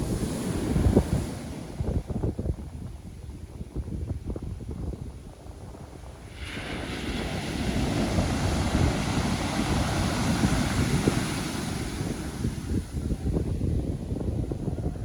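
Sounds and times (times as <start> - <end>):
wave breaking and washing: 0.0 - 2.4, 5.9 - 15.0
wind buffeting microphone: 0.0 - 15.0
low surf rumbling: 5.3 - 15.0.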